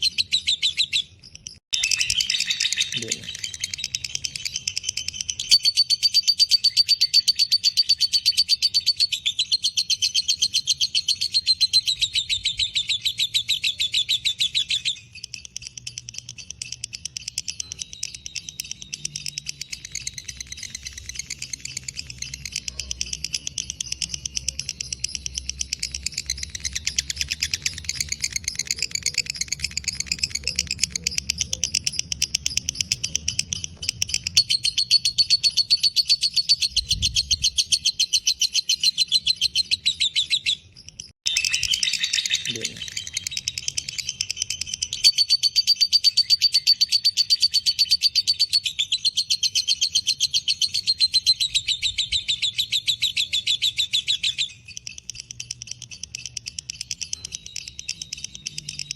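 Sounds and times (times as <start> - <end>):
lovebird chattering trill: 0.0 - 58.9.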